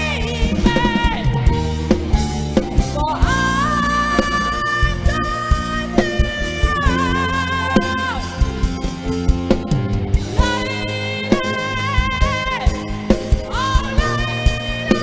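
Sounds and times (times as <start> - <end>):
rock band playing a power ballad: 0.0 - 15.0.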